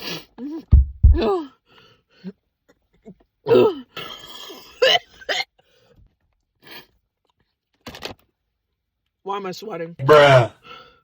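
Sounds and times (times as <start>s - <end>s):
woman groaning: 1.0s - 1.6s
woman coughing: 2.7s - 5.6s.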